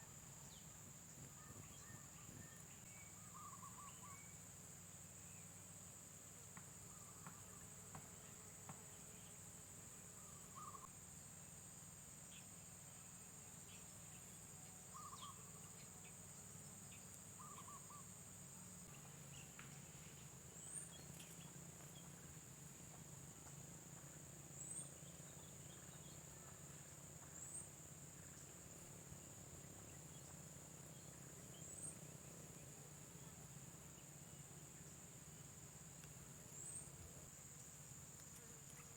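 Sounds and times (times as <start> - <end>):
faint bird calls: 1.3 - 4.4, 10.2 - 10.9, 14.8 - 16.2, 17.4 - 18.2.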